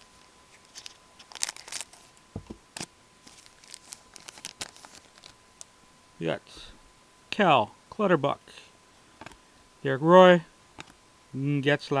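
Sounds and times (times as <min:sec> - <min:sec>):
wrapper tearing and crinkling: 0:00.5 - 0:02.1, 0:02.8 - 0:05.4
soft thump: 0:02.4 - 0:02.6.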